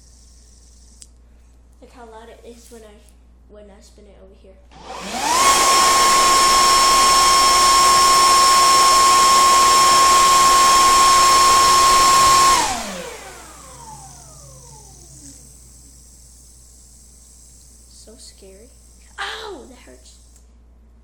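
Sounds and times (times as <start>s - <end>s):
leaf blower motor whine: 4.8s - 17.9s.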